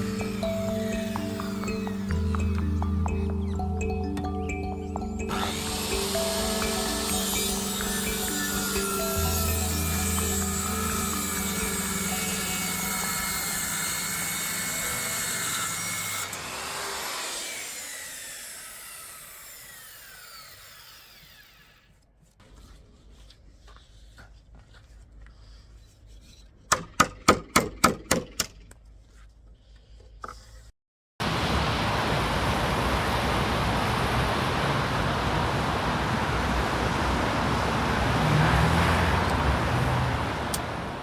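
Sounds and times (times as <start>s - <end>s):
power tool winding down: 0.0s - 22.0s
sharp strokes on wood: 5.3s - 30.7s.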